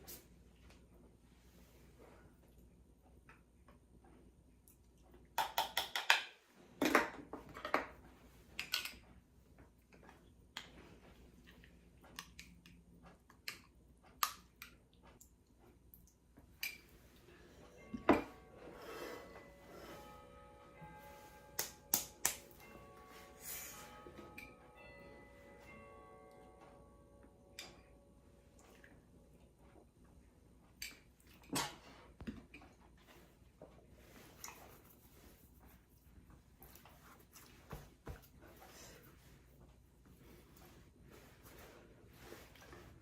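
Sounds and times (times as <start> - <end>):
ringing bell-like tone: 17.4 - 29.1.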